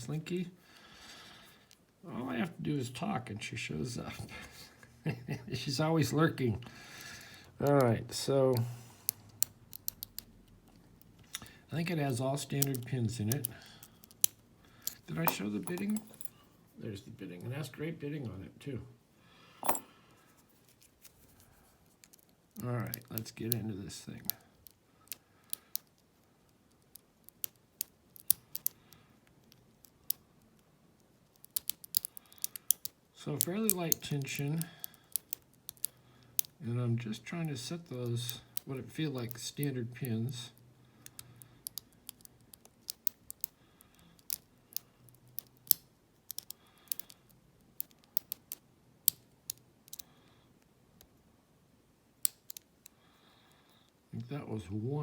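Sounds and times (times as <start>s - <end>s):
lock pick clicking in padlock: 9.1s - 11.5s, 12.5s - 16.3s, 26.7s - 28.8s, 31.3s - 33.0s, 33.6s - 36.6s, 41.0s - 50.1s, 52.2s - 52.7s.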